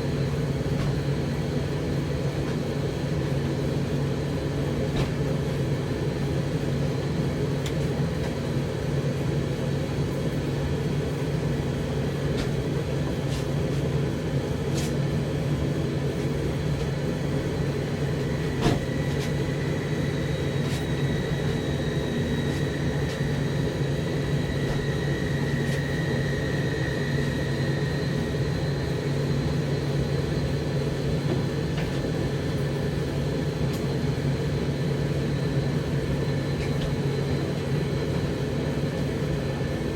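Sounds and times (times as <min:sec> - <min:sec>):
tumble dryer motor hum: 0:00.0 - 0:39.9
faint high whine: 0:17.1 - 0:31.0.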